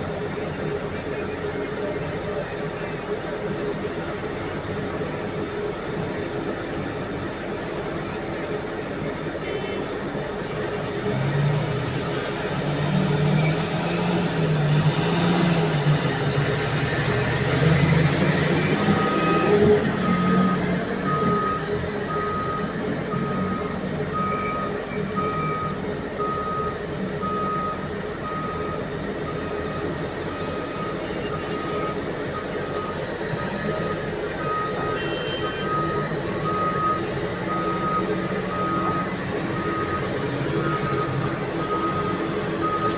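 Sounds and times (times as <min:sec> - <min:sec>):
heavy diesel engines working: 0:00.0 - 0:42.9
reversing alarm beeping: 0:17.1 - 0:42.9.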